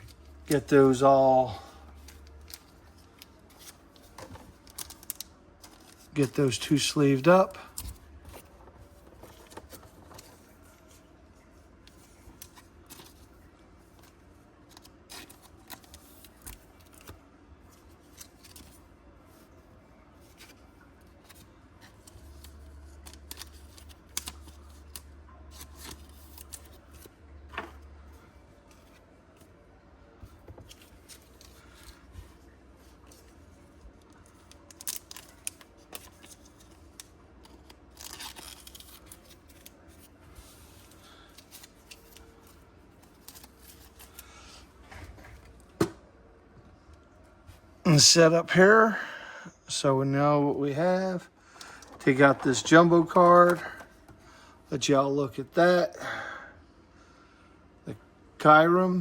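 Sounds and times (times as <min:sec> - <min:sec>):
cards sliding into plastic sleeves: 0:51.6 - 0:54.2.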